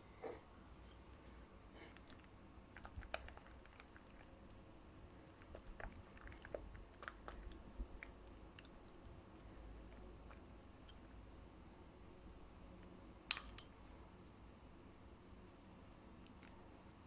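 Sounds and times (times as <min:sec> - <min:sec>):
small clicks and sticky ticks: 0:01.9 - 0:11.2, 0:16.2 - 0:16.8
faint high chirps: 0:09.3 - 0:12.2, 0:16.4 - 0:17.0.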